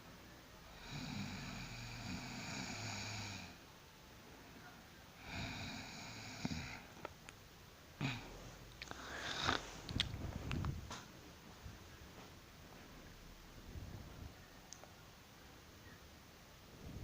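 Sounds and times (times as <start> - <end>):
person snoring: 0.7 - 3.6, 5.2 - 7.0, 8.0 - 9.7.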